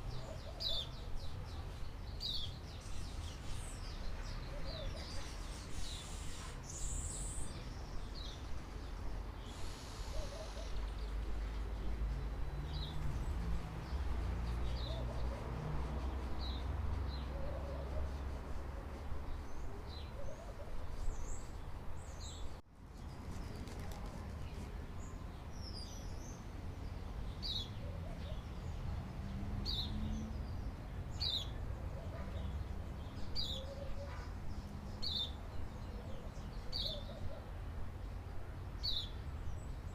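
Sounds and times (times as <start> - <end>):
birds chirping: 0.0 - 18.3.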